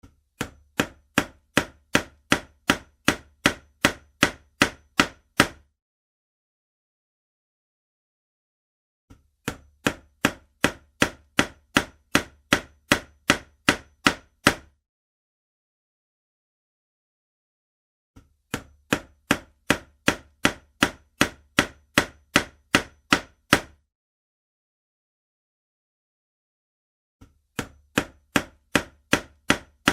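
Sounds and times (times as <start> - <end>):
hammer striking: 0.0 - 5.7, 9.1 - 14.8, 18.2 - 23.8, 27.2 - 29.9.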